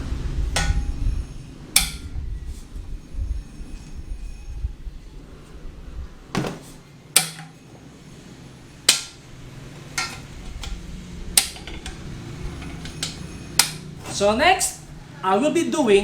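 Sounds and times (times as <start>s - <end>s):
metallic clanks and knocks: 0.5s - 1.1s, 1.7s - 2.1s, 6.3s - 7.6s, 8.8s - 10.8s, 11.4s - 14.2s.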